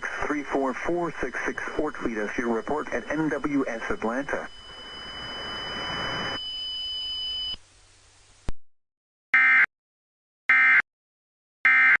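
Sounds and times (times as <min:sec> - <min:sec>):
steady high tones: 0:00.5 - 0:07.6
digital data tone bursts: 0:00.7 - 0:07.6
faint hiss: 0:07.6 - 0:08.5.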